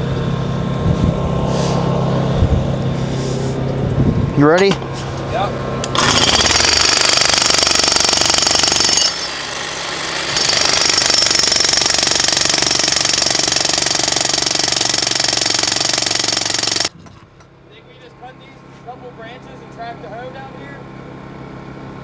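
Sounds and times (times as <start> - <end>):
jackhammer hammering: 5.8 - 17.0.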